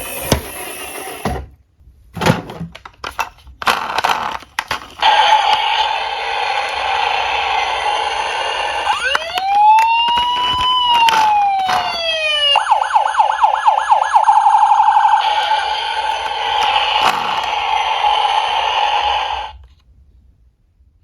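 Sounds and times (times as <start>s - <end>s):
electronic siren wailing and yelping: 8.7s - 16.0s.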